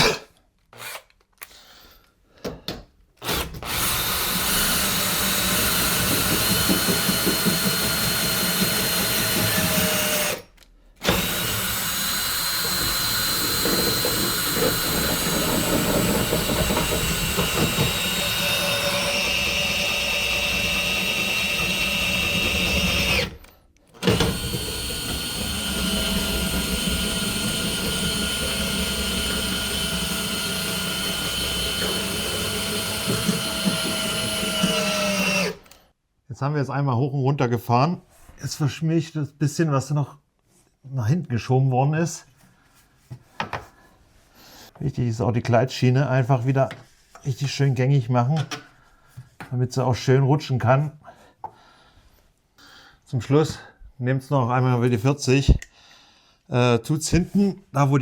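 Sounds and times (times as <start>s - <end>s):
cordless drill running: 3.2s - 35.8s.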